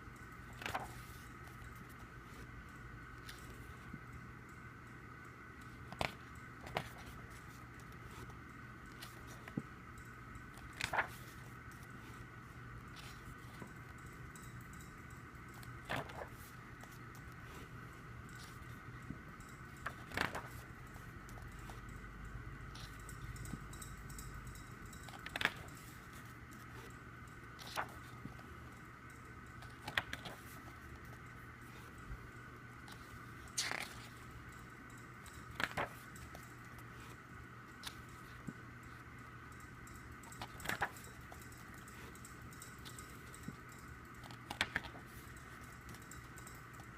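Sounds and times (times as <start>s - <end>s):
faint steady hum: 0.0s - 46.9s
paper handling taps and crackles: 0.6s - 2.4s, 10.5s - 12.2s, 15.6s - 17.7s, 18.4s - 21.8s, 25.1s - 26.9s, 32.9s - 34.2s, 35.5s - 37.2s, 40.3s - 41.0s, 44.2s - 46.0s.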